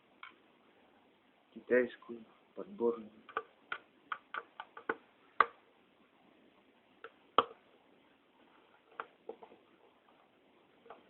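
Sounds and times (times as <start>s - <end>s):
screwdriver clicking and tapping: 3.3s - 5.6s.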